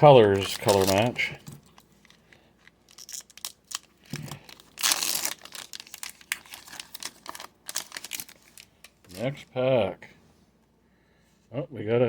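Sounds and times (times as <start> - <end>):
foil wrapper crinkling and tearing: 0.0 - 9.3.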